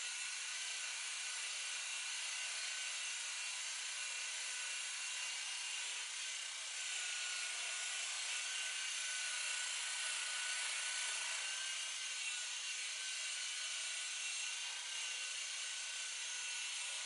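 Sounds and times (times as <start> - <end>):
electric buffer whining: 4.6 - 17.0.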